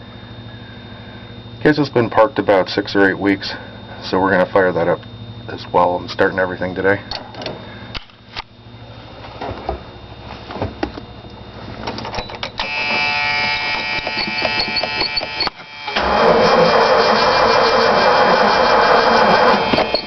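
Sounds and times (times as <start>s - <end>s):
car warning buzzer: 12.3s - 20.0s
starter motor cranking engine: 13.8s - 20.0s.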